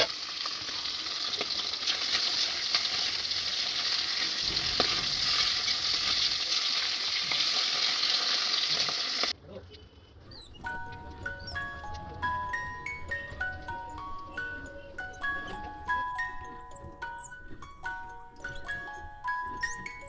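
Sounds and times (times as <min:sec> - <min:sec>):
food sizzling in hot oil: 0:00.0 - 0:09.4.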